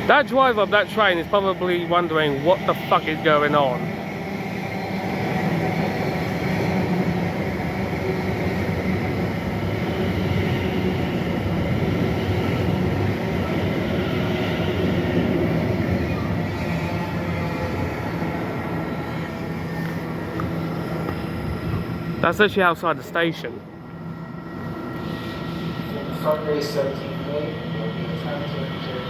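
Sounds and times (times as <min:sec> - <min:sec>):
train rumbling: 0:00.0 - 0:29.0.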